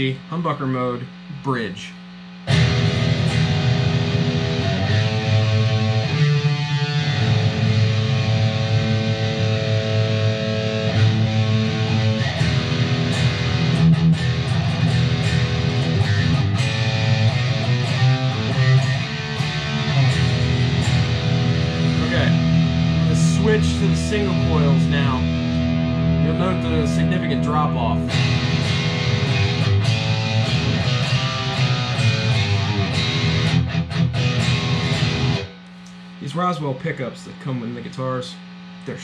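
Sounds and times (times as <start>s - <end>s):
distorted electric guitar: 1.0s - 36.8s.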